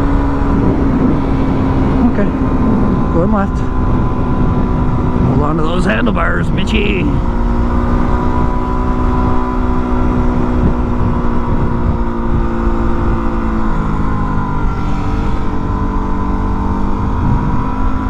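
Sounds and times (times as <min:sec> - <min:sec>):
motorcycle engine running: 0:00.0 - 0:18.0
wind on microphone: 0:16.8 - 0:17.8.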